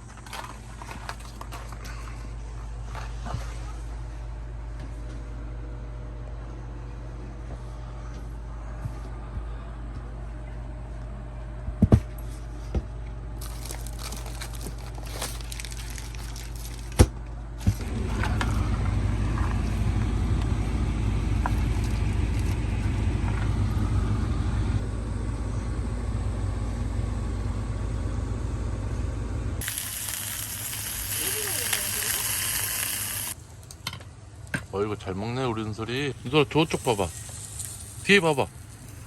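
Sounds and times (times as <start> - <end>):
low rumble: 13.4 - 31.1
steady hiss: 29.6 - 33.4, 35.8 - 39.0.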